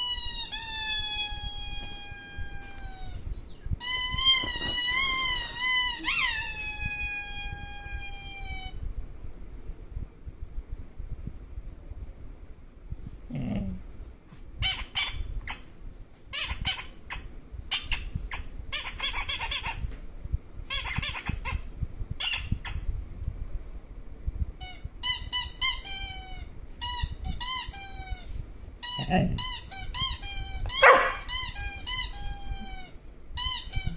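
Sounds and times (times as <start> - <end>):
squeaky chirps falling in pitch: 0.0 - 8.7, 29.8 - 33.9
high-pitched squeaking: 0.0 - 8.8, 25.0 - 33.9.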